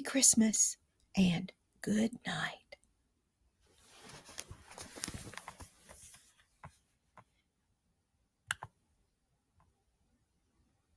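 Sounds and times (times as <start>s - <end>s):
handling clicks and rustling: 3.9s - 6.8s.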